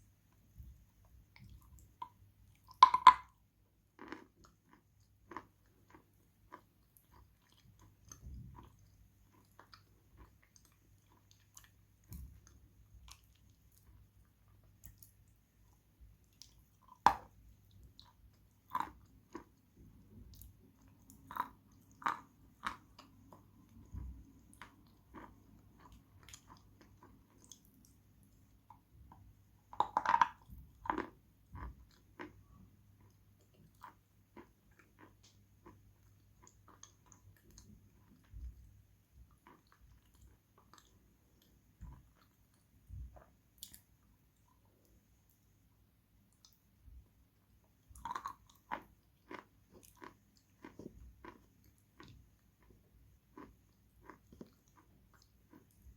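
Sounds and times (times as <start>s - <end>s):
crunchy chewing: 3.9s - 28.0s, 29.8s - 38.6s, 47.9s - 55.9s.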